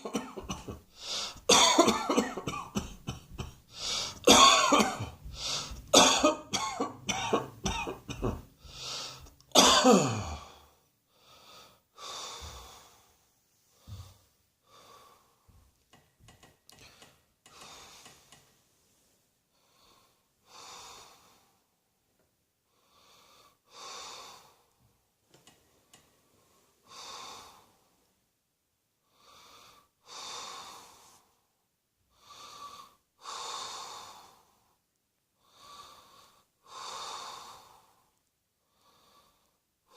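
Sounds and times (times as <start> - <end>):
person coughing harshly: 0.0 - 0.8, 1.4 - 8.5, 9.5 - 10.5
wheezy breaths: 0.8 - 1.5, 3.4 - 4.3, 5.0 - 5.9, 8.6 - 9.4, 32.1 - 34.7, 35.4 - 39.9.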